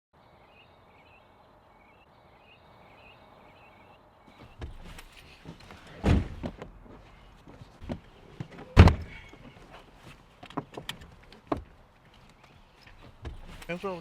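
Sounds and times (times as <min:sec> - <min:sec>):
car doors shutting: 0:04.4 - 0:06.8, 0:07.8 - 0:09.5
light clicks and knocks: 0:07.4 - 0:13.8.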